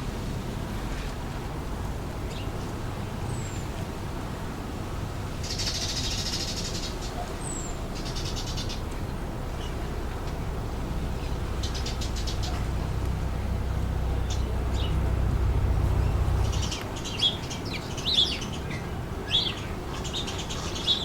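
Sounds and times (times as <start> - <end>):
wind rumble: 6.1 - 19.3.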